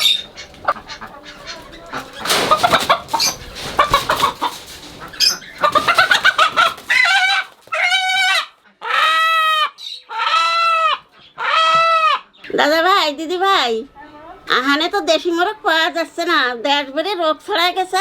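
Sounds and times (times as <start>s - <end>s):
chicken clucking and squawking: 0.0s - 12.5s.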